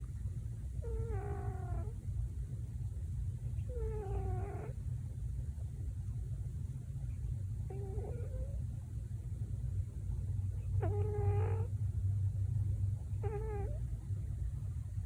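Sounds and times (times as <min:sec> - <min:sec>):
steady low rumble: 0:00.0 - 0:15.0
cat snoring: 0:00.8 - 0:02.0, 0:03.6 - 0:04.8, 0:07.6 - 0:08.6, 0:10.6 - 0:11.7, 0:13.1 - 0:13.8.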